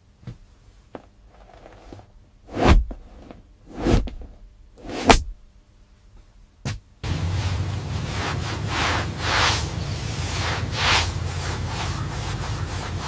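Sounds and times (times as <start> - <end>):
whooshes: 2.5 - 3.1, 3.7 - 5.4.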